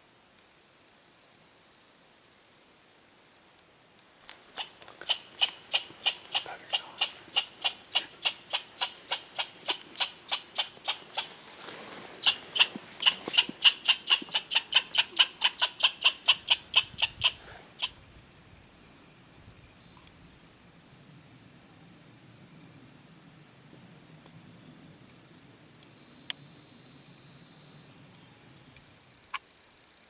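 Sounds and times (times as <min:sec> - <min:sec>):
animal giving sharp high calls: 0:04.6 - 0:11.4, 0:12.2 - 0:17.9.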